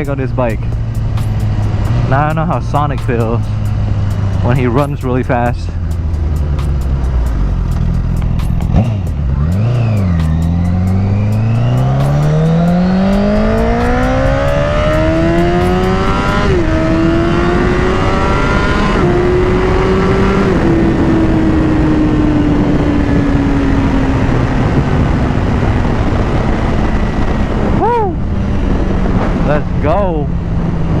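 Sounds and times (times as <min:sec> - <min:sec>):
motorcycle engine accelerating: 0:00.0 - 0:31.0
wind on microphone: 0:08.8 - 0:31.0.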